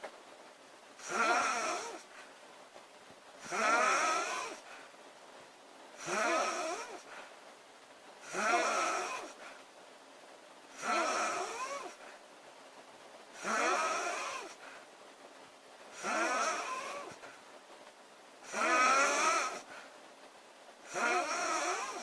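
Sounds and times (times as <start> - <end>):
quiet breaths: 0.0 - 22.0
girl snoring: 1.0 - 2.2, 3.4 - 4.8, 6.0 - 7.2, 8.2 - 9.5, 10.7 - 12.1, 13.4 - 14.7, 15.9 - 17.3, 18.4 - 19.8, 20.8 - 22.0.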